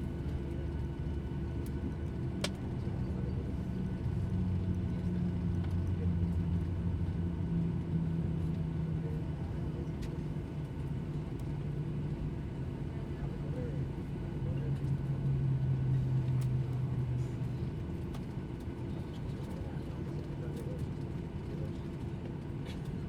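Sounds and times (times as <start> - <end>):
airliner cabin engine rumble: 0.0 - 23.0.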